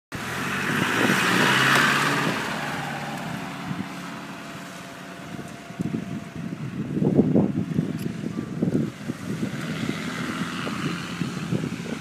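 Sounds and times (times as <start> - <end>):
off-road vehicle engine rumbling: 0.1 - 12.0.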